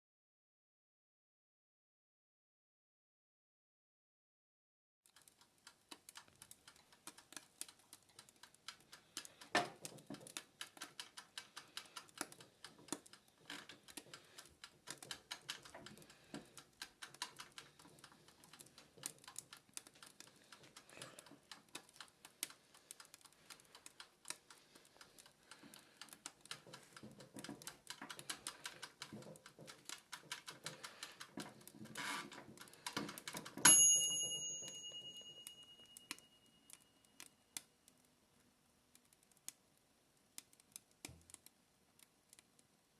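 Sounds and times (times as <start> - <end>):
clockwork timer ticking: 5.1 - 37.7
timer click: 33.6 - 37.7
timer bell ding: 33.7 - 36.7.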